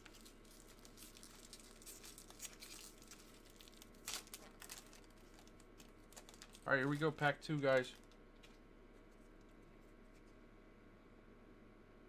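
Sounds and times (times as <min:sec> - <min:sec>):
foil wrapper crinkling: 0:00.0 - 0:09.6.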